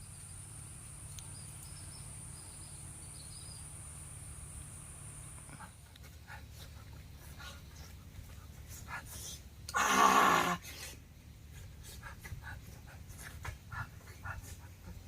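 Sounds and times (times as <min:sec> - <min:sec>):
steady low hum: 0:00.0 - 0:09.8
faint scattered clicks: 0:01.1 - 0:01.8.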